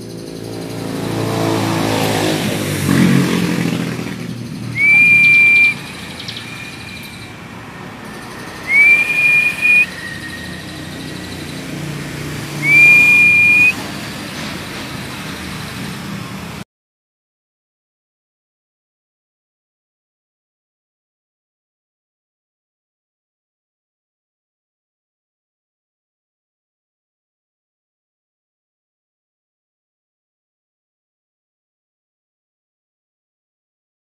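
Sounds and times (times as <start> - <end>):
motor vehicle passing: 0.0 - 16.6
long whistled notes: 4.7 - 7.4, 8.1 - 11.5, 12.6 - 13.8.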